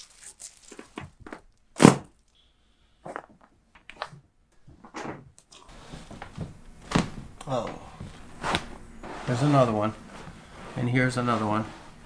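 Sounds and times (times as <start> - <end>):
soft knocks: 5.8 - 8.8.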